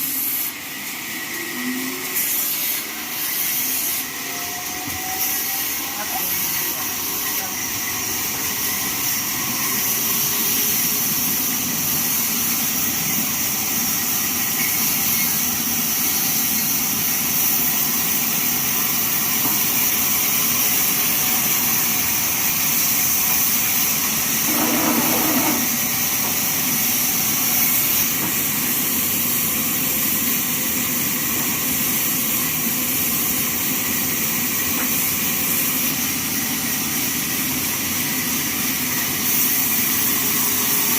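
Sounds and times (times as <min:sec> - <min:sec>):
band sawmill whining: 0:18.7 - 0:30.0.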